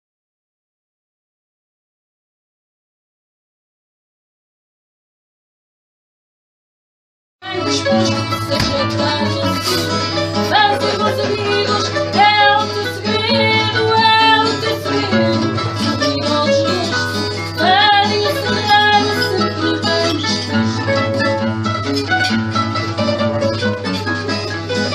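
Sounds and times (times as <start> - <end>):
plucked guitar melody: 7.4 - 24.9
strummed guitar accompaniment: 7.4 - 24.9.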